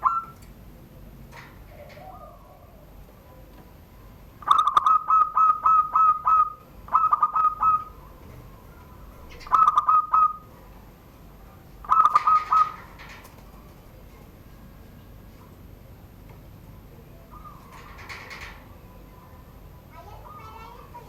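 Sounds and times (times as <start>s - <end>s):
dove cooing: 0.0s - 0.5s, 1.4s - 3.5s, 4.4s - 14.0s, 16.9s - 21.0s.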